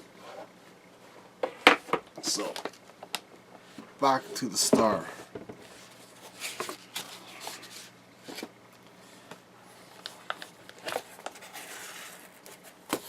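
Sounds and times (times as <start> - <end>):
faint steady hum: 0.0 - 13.0
cardboard packaging rustling: 9.8 - 13.0.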